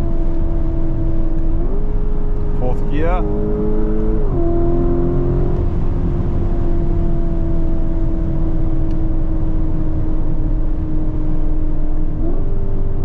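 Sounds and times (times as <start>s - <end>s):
car engine at high speed: 0.0s - 13.0s
road and wind rumble: 0.0s - 13.0s.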